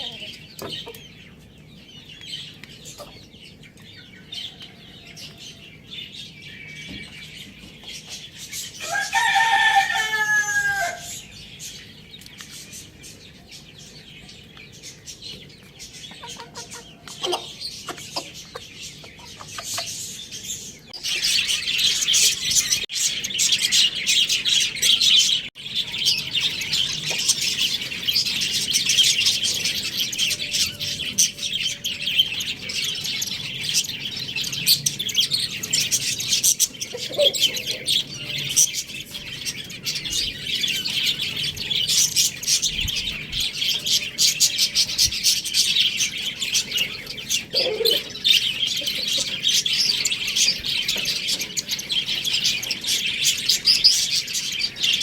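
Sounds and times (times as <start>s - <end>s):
flock of birds chirping: 0.0s - 55.0s.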